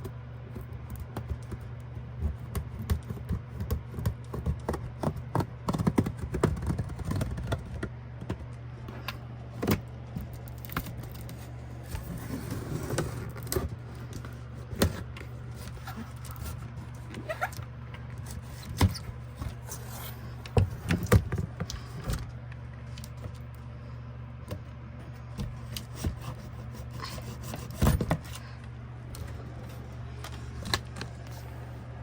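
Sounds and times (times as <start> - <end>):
box and packaging handled: 9.0 - 23.5.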